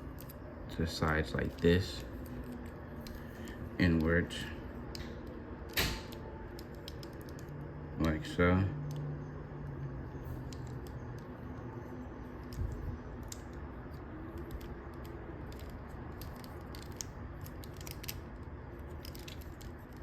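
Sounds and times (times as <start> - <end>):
low background hum: 0.0 - 20.0
plastic toy parts clicking: 14.3 - 18.2, 18.9 - 20.0.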